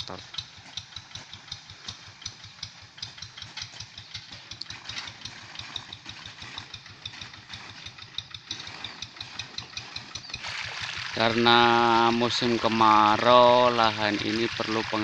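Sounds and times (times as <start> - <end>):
diesel engine puttering: 0.0 - 15.0.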